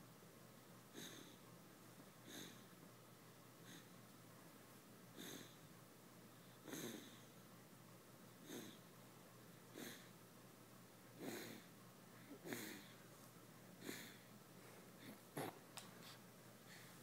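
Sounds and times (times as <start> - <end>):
faint wheezy snoring: 0.9 - 1.4, 2.2 - 2.7, 3.6 - 4.0, 5.1 - 5.7, 6.4 - 7.3, 8.4 - 8.8, 9.7 - 10.1, 11.2 - 13.0, 13.8 - 14.3.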